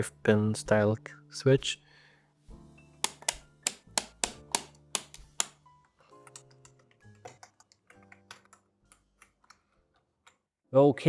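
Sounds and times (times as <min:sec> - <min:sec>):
quiet background music: 0:00.0 - 0:11.0
sharp plastic clicks: 0:03.0 - 0:05.6.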